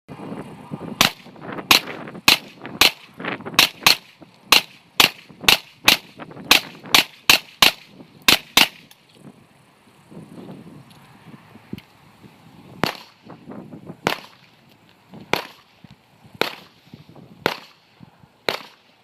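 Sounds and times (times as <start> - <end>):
gunshots: 1.0 - 8.9, 12.8 - 13.2, 14.0 - 14.4, 16.4 - 16.8, 17.4 - 17.8, 18.5 - 18.8.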